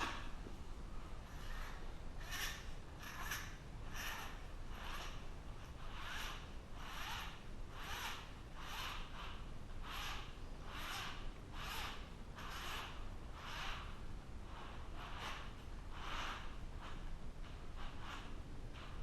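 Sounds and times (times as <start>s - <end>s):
rasping filing strokes: 1.4s - 13.8s.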